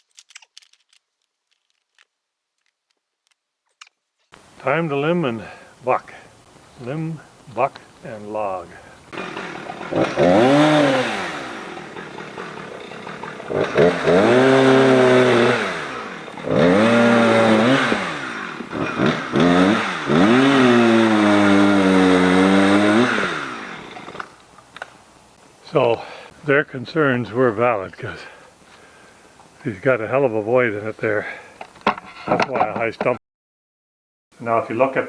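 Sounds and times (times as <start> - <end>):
chainsaw revving: 9.1 - 24.3.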